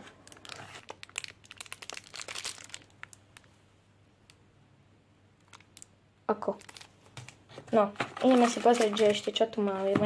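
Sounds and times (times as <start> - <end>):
packaging crinkling: 0.2 - 3.6, 5.4 - 5.9, 6.5 - 7.5, 8.1 - 9.4.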